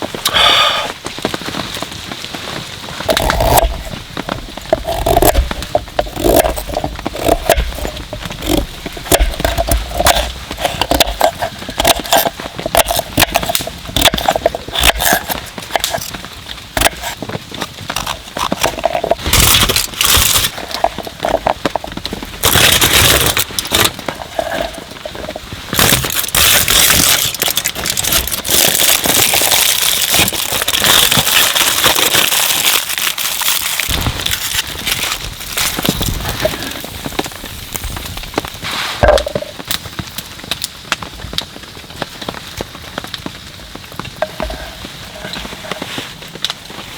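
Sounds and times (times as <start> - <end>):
campfire crackling and popping: 0.0 - 46.9
steady hiss: 36.0 - 40.4.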